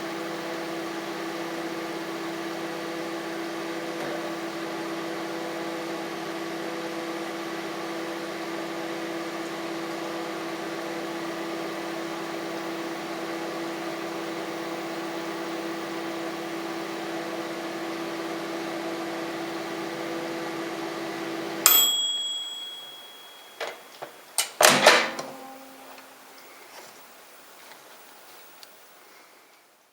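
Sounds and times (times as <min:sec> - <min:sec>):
microwave oven humming: 0:00.0 - 0:26.5
microwave ding: 0:21.7 - 0:26.0
short clicks and knocks: 0:23.6 - 0:26.1.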